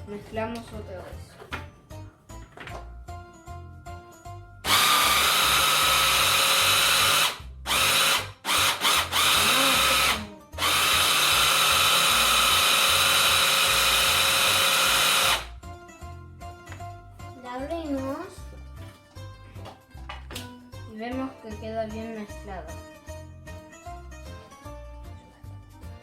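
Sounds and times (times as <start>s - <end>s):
electric blender running: 4.6s - 15.6s.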